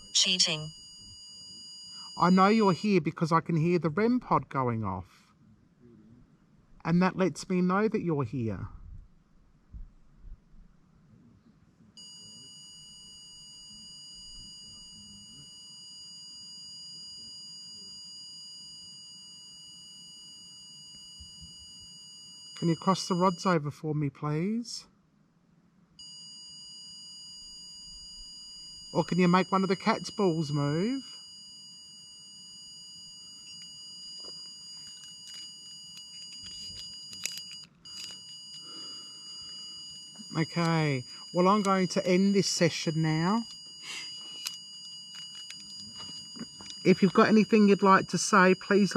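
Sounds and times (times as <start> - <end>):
high-pitched electronic alarm tone: 0.0 - 3.1, 12.0 - 23.6, 26.0 - 48.9.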